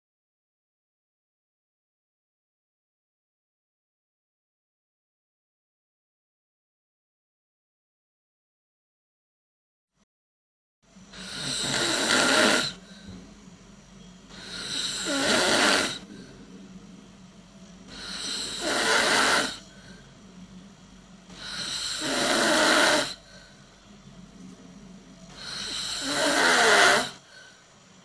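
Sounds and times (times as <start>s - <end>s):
faint low hum: 10.8s - 28.0s
person snoring: 11.1s - 13.1s, 14.3s - 16.4s, 17.9s - 20.1s, 21.3s - 23.6s, 25.3s - 27.6s.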